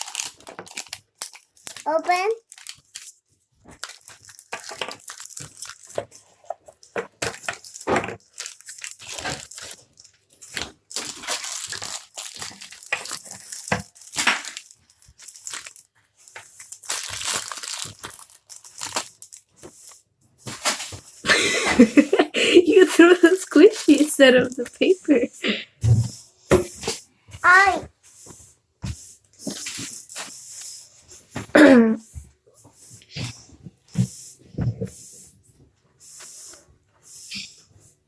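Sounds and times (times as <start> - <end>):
wrapping crinkling and tearing: 0.0 - 21.1.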